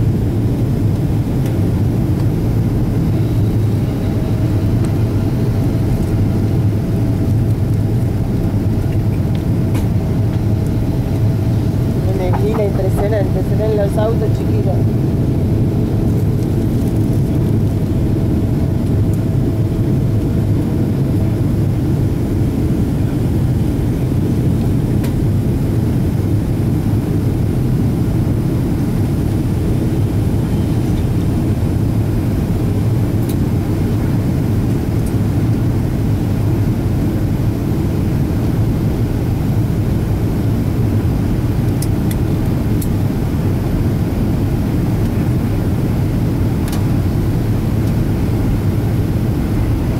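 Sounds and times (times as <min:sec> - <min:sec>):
airplane cabin roar: 0:00.0 - 0:49.9.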